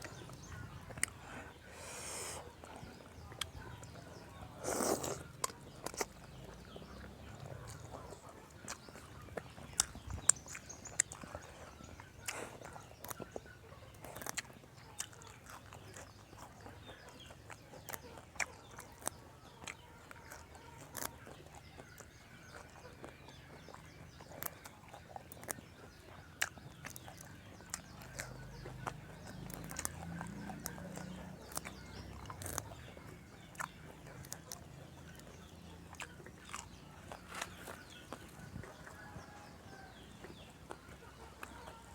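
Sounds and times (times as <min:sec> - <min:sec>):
mouth smacks: 0:00.0 - 0:41.9
person chewing crunchy food: 0:00.0 - 0:41.9.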